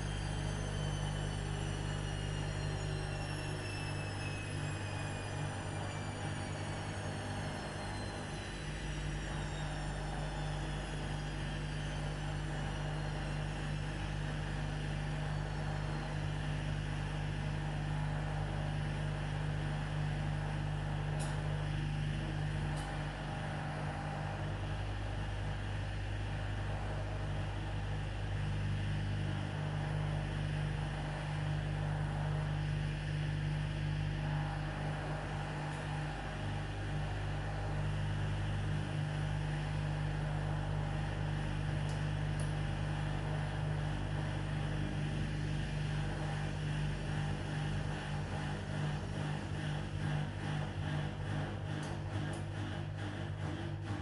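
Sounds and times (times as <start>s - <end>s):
faint high whine: 0.0s - 25.6s
washing machine motor hum: 0.0s - 54.0s.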